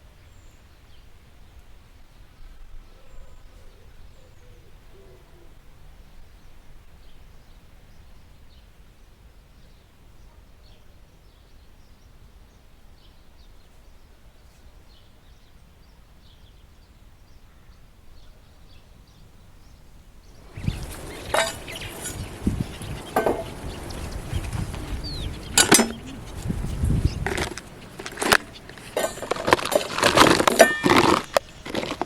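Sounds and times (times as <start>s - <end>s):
faint bird chirps: 2.4s - 5.6s, 20.2s - 29.0s
loud rustling: 20.4s - 32.0s
knocks and clinks of handling: 20.9s - 22.3s, 23.1s - 23.6s, 25.6s - 26.3s, 27.2s - 32.0s.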